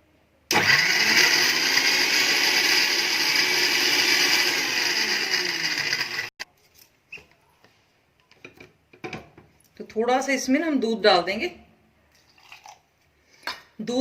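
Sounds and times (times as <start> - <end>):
mixer grinder motor grinding: 0.5 - 6.4.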